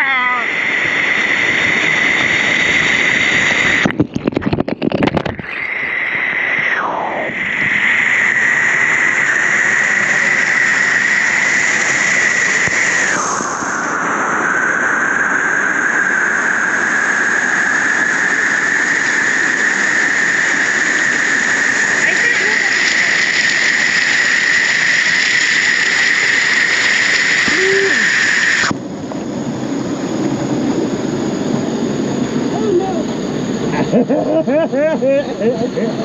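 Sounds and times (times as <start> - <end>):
high-pitched whine: 0.0 - 36.0
rushing water echoing in cave: 15.1 - 28.8
water splashing and gurgling: 18.0 - 28.8.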